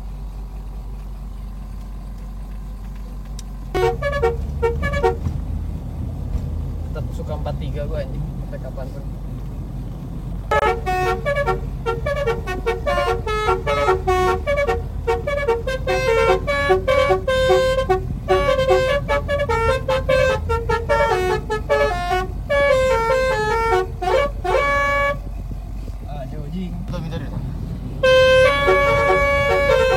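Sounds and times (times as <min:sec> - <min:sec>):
musical air horn tune: 0:03.7 - 0:05.3, 0:10.5 - 0:25.3, 0:28.0 - 0:29.9.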